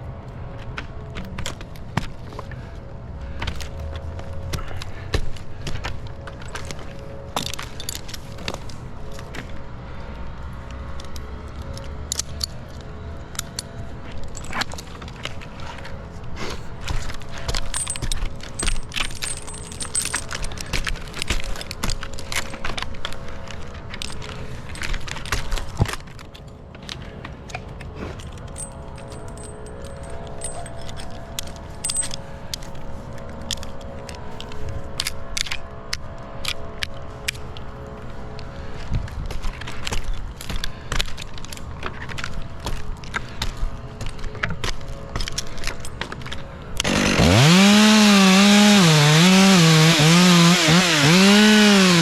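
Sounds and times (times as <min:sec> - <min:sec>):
metal climbing hardware clinking: 0:11.0 - 0:15.2, 0:17.4 - 0:22.8, 0:27.6 - 0:32.8, 0:45.2 - 0:52.0.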